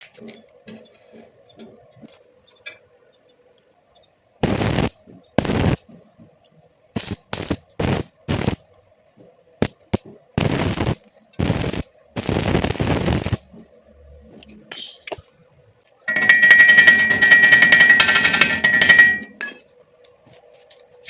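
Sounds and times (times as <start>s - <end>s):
welding arc crackling: 4.4s - 5.9s, 6.9s - 8.7s, 9.6s - 13.5s, 16.1s - 19.3s
low hum: 16.1s - 19.4s.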